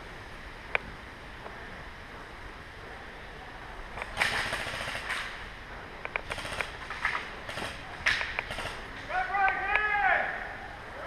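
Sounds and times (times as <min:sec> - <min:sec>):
airsoft guns firing: 0:04.0 - 0:05.4, 0:06.2 - 0:09.0.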